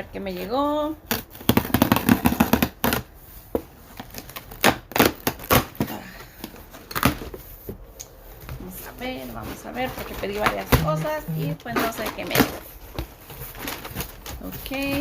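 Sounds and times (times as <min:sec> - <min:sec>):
cardboard box crackling: 0:08.7 - 0:15.0.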